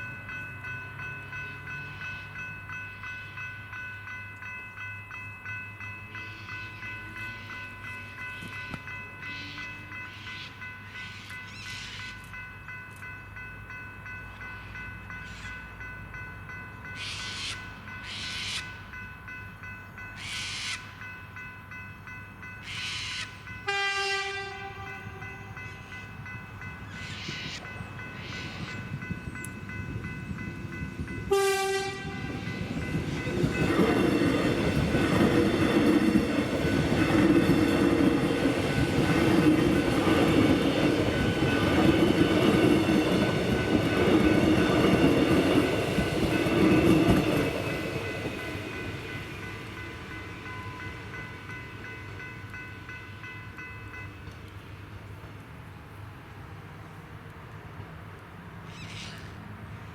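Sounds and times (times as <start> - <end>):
crossing bells ringing: 0.0 - 56.8
train wheels and motors rumbling: 22.4 - 59.9
electric train horn: 23.0 - 25.6, 31.3 - 32.4.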